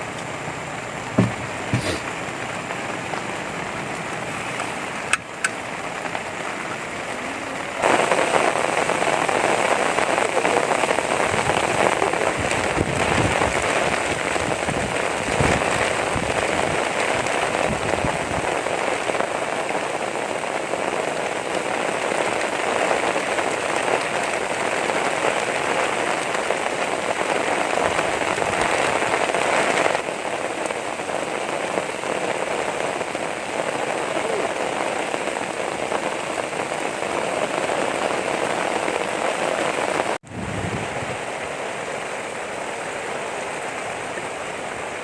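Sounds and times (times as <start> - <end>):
heavy rain: 0.0 - 45.0
dull low knocks: 1.1 - 2.0.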